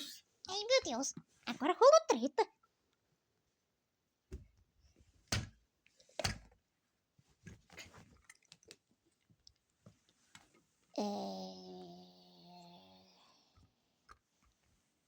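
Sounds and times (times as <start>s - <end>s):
small clicks and rustles: 5.8s - 10.9s
person humming a held tone: 11.0s - 13.3s.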